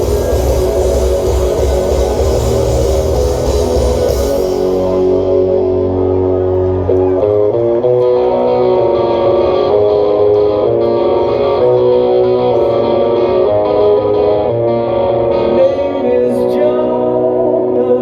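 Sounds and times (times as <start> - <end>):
live rock band playing: 0.0 - 18.0
ringing guitar chords: 0.0 - 18.0.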